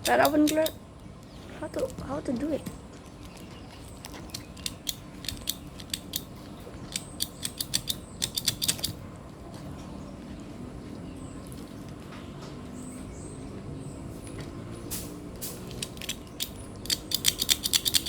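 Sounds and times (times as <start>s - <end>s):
empty stapler clicking: 0.0s - 0.8s, 4.3s - 6.3s, 6.9s - 9.0s, 15.7s - 18.0s.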